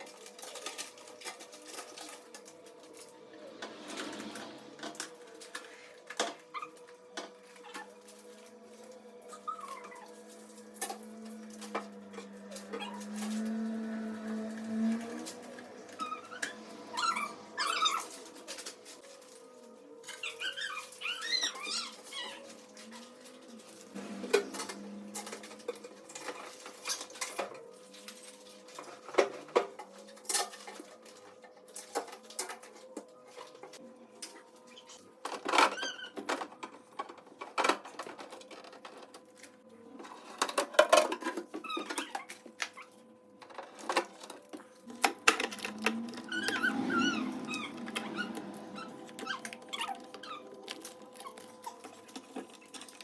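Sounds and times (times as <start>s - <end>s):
objects being handled: 0.0s - 53.0s
high wavering squeaks: 11.3s - 18.6s, 45.7s - 52.1s.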